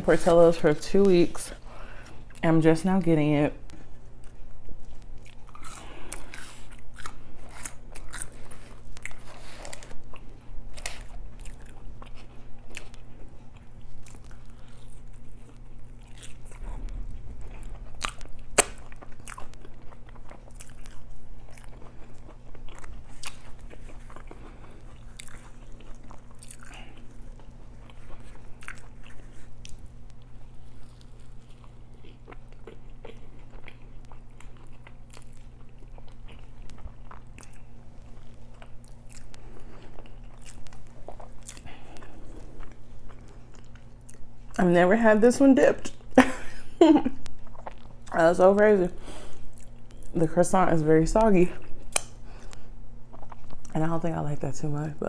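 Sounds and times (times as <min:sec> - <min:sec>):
person chewing food: 0:03.6 - 0:44.6, 0:45.9 - 0:50.2, 0:51.6 - 0:53.8
wet mouth clicks: 0:51.9 - 0:52.2.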